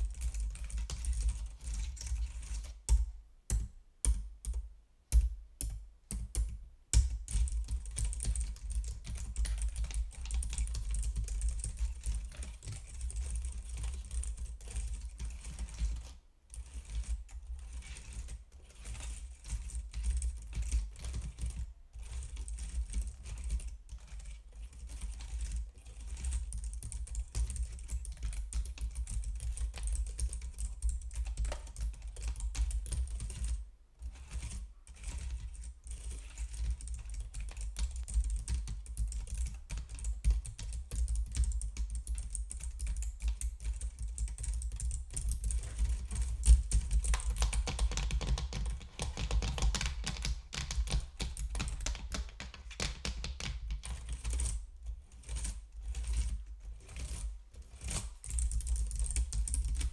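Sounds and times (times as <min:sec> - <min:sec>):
rapid keyboard typing: 0:00.0 - 0:02.6, 0:06.1 - 0:16.0, 0:26.2 - 0:33.6, 0:36.3 - 0:54.6, 0:57.9 - 0:59.9.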